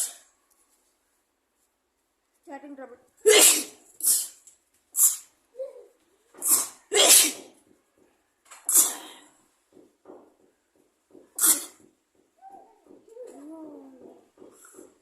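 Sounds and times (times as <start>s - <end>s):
person sneezing: 3.2s - 4.4s, 6.4s - 7.5s, 8.7s - 9.2s, 11.4s - 11.8s.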